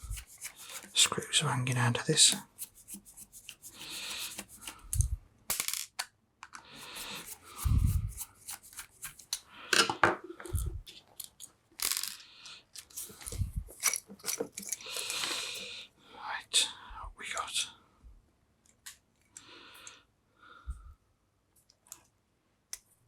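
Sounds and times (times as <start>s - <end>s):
small parts clicking and scraping: 0.0s - 1.1s, 2.4s - 15.7s.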